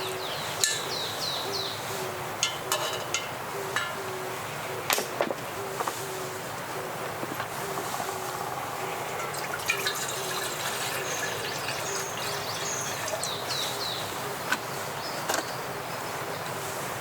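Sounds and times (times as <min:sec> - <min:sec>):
high falling bird chirps: 0:07.8 - 0:14.2.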